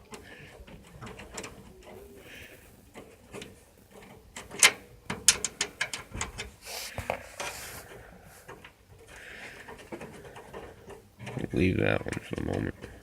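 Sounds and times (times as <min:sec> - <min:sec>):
metal parts clicking: 0:03.0 - 0:06.5
metal parts knocking: 0:03.0 - 0:06.5.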